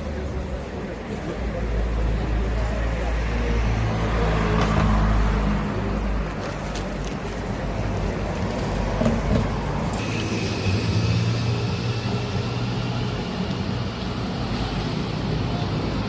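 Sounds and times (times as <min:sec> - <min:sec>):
road noise: 0:00.0 - 0:16.0
vehicle engine running: 0:10.0 - 0:14.6.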